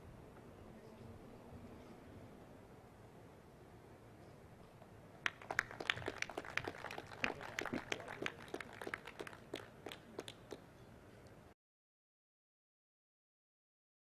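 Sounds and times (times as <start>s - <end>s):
sparse audience applause: 5.2s - 10.6s.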